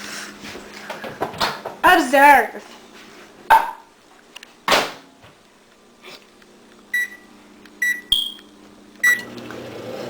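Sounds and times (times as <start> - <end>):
microwave keypad beeps: 6.9 - 9.3
higher longer beep: 7.8 - 8.5.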